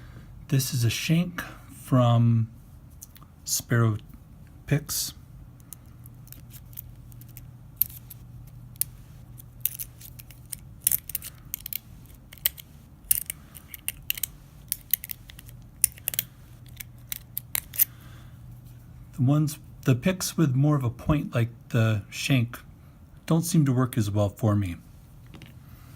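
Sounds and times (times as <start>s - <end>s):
lock pick scraping in padlock: 8.8s - 17.9s.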